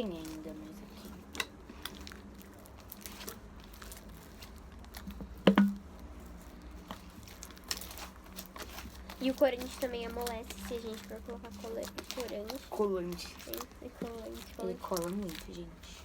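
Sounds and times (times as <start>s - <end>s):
slime squishing: 0.0s - 16.0s
sharp knock: 5.5s - 5.8s.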